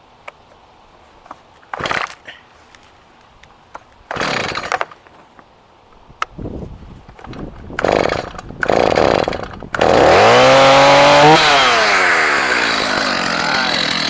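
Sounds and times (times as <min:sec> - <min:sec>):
chainsaw engine revving: 0:01.7 - 0:02.2, 0:04.1 - 0:04.9, 0:07.2 - 0:14.0
chainsaw pull-start cranking: 0:01.7 - 0:02.3, 0:03.7 - 0:05.1, 0:07.1 - 0:14.0.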